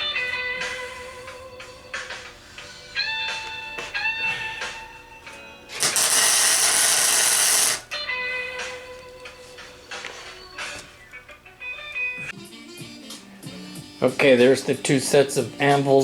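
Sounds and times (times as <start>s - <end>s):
welding arc crackle: 5.8s - 7.9s.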